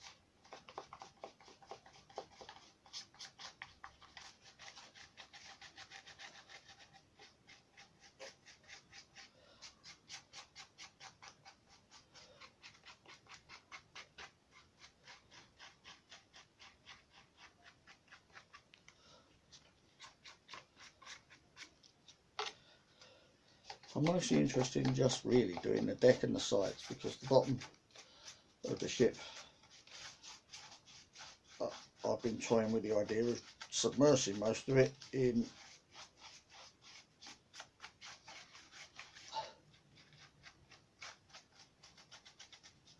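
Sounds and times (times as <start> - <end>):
paintbrush scratching on paper: 0.0 - 22.5, 23.6 - 42.9.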